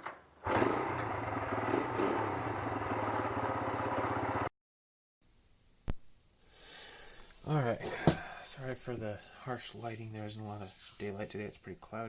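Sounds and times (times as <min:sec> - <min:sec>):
small engine running: 0:00.4 - 0:04.5.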